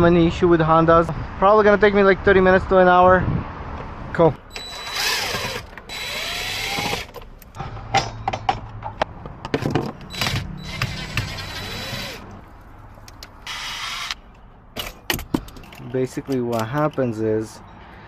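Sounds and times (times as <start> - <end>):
power drill whining: 4.5 - 7.2, 10.1 - 12.3, 13.5 - 14.2.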